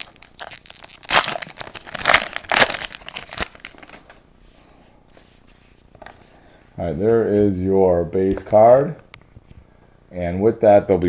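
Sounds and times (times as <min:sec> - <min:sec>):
card pack wrappers crinkling: 0:00.0 - 0:04.2.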